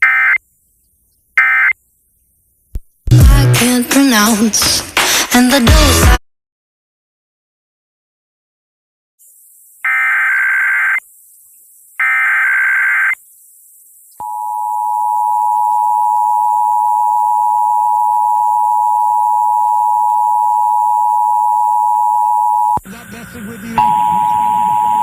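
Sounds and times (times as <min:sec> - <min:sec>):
steady two-tone attention signal: 0:14.2 - 0:25.0
warbling digital data tones: 0:22.5 - 0:25.0.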